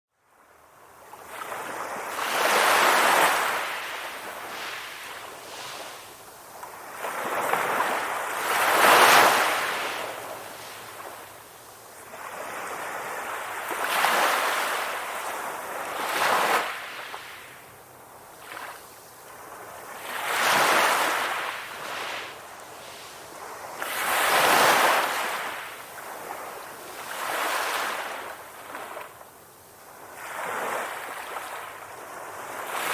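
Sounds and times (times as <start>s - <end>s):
ocean waves crashing: 7.0s - 11.3s, 20.0s - 28.3s.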